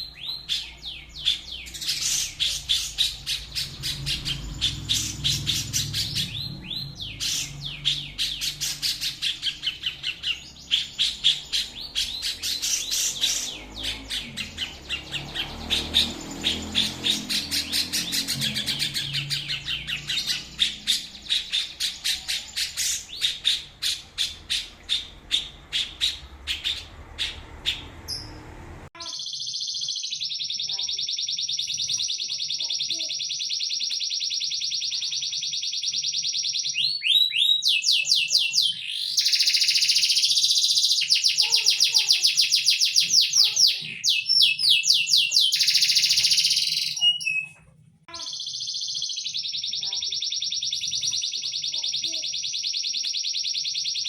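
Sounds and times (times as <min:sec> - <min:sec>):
songbird chirps and trills: 0:00.0 - 0:28.4, 0:29.0 - 0:54.0
bird high buzzing trill: 0:37.6 - 0:47.4.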